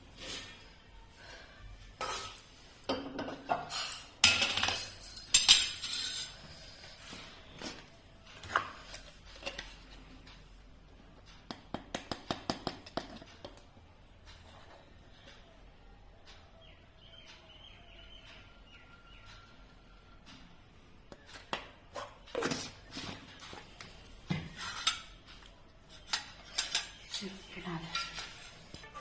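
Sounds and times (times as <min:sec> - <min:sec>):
utensils clinking against metal dishes: 0:02.0 - 0:06.5, 0:25.9 - 0:29.0.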